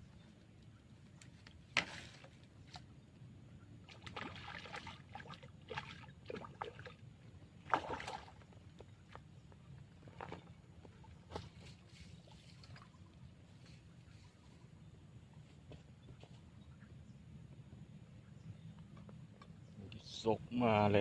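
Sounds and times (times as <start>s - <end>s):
water splashing and sloshing: 0.9s - 14.7s.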